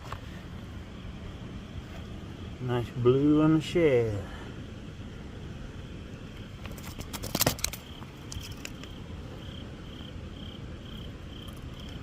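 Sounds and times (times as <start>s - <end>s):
crickets chirping: 0.0s - 12.0s
low background noise: 0.0s - 12.0s
clicks and rattles: 6.6s - 9.0s.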